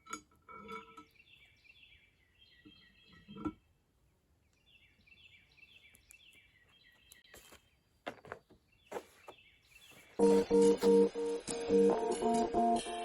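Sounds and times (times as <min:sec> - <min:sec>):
faint bird chirping: 0:00.8 - 0:11.1.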